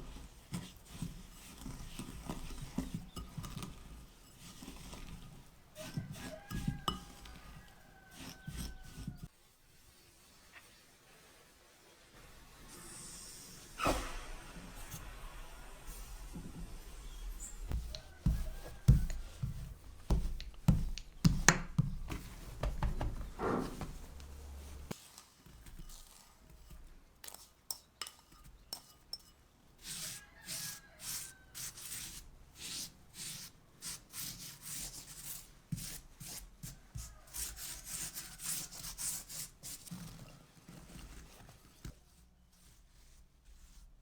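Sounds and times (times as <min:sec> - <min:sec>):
scraping on a hard surface: 0:00.0 - 0:09.3, 0:16.2 - 0:25.0
knocks and thuds: 0:17.7 - 0:24.2.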